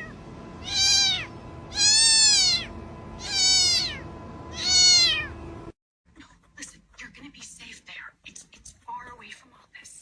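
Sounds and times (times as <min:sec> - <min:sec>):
cat meowing: 0:00.0 - 0:05.4.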